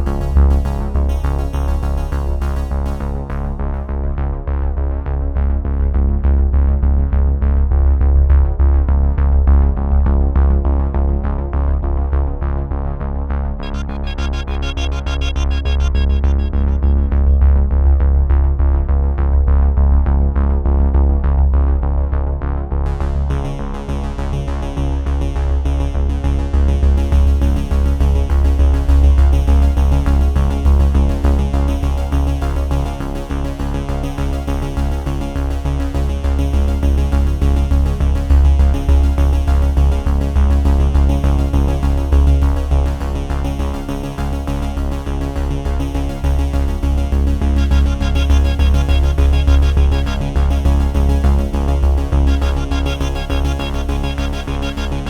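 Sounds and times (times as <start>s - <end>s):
electronic synthesizer music: 13.6s - 18.1s, 46.4s - 55.0s.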